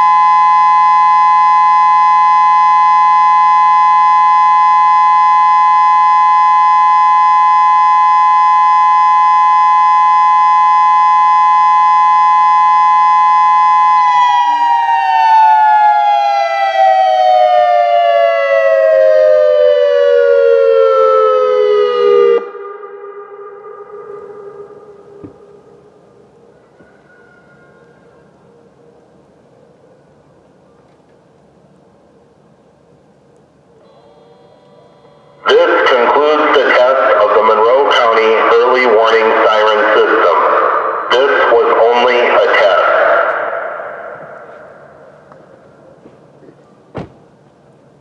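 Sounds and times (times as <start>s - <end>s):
siren falling in pitch: 0.0s - 28.1s
faint steady tone: 22.5s - 38.7s.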